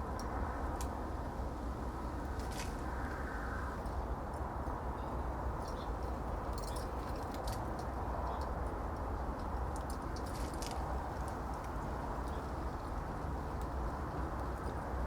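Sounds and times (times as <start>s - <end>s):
birds high-pitched ticks: 3.8s - 15.0s.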